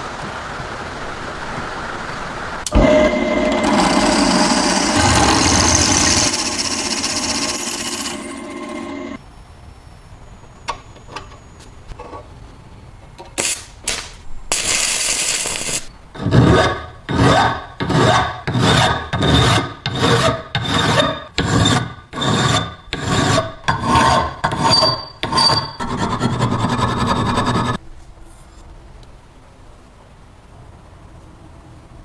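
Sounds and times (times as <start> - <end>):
burst of rough noise: 2.6 - 9.2, 13.4 - 15.9
rhythmic rasping strokes: 2.7 - 9.2.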